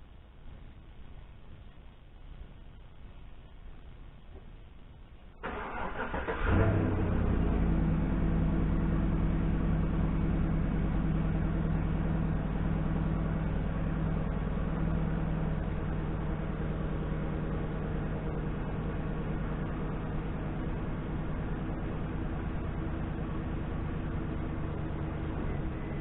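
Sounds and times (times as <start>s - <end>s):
engine revving and running: 5.6s - 26.0s.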